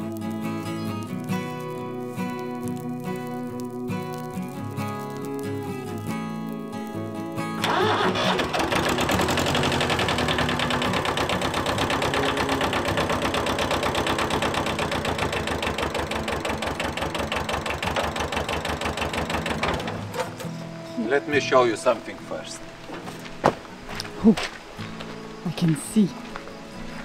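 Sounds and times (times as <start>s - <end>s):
engine running: 7.6s - 20.8s.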